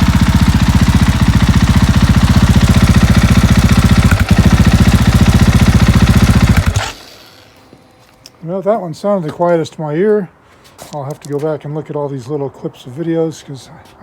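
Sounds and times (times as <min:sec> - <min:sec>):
motorcycle engine idling: 0:00.0 - 0:08.0.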